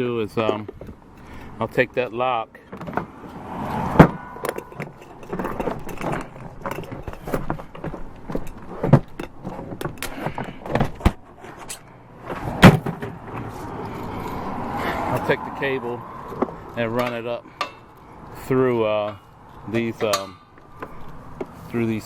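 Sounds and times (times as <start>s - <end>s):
sharp metallic knocks: 2.8s - 7.4s, 16.4s - 17.9s, 20.0s - 21.5s.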